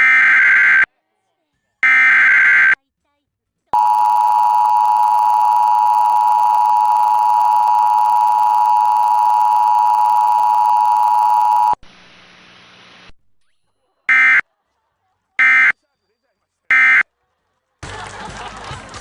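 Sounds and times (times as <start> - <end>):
two-tone alert signal: 3.8 - 11.8.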